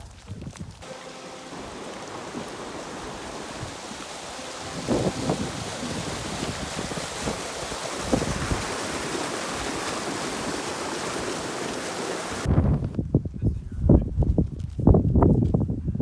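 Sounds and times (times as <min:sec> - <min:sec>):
rushing water: 0:00.8 - 0:12.5.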